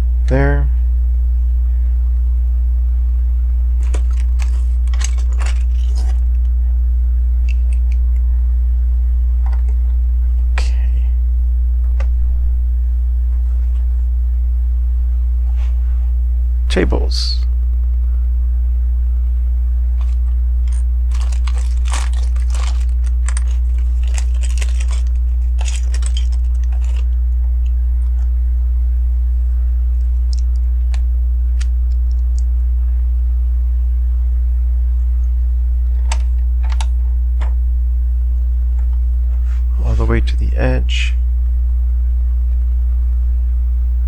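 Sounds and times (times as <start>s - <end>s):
low electrical hum: 0.0s - 44.0s.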